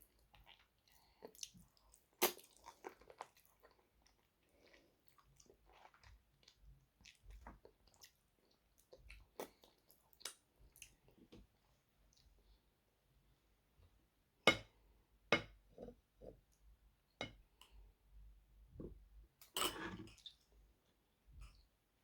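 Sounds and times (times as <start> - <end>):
wet eating sounds: 0.0 - 11.4.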